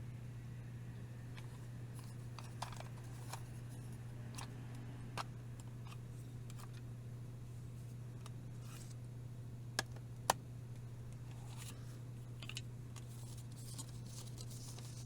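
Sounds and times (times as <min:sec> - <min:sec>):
items clicking and tapping: 0:01.4 - 0:03.5, 0:12.4 - 0:15.0.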